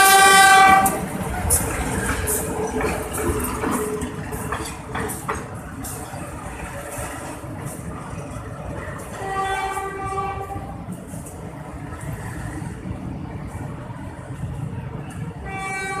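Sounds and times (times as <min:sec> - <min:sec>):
train horn blast: 0:00.0 - 0:01.0, 0:09.2 - 0:10.8, 0:15.4 - 0:16.0
diesel train rumbling past: 0:00.0 - 0:16.0.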